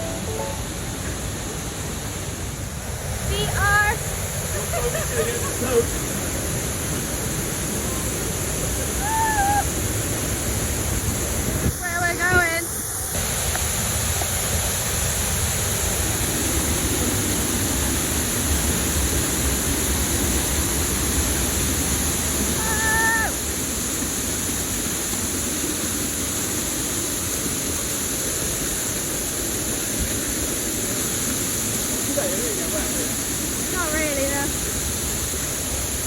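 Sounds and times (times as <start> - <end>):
brief high-pitched call: 0.0 - 0.9
waterfall rushing: 0.0 - 36.0.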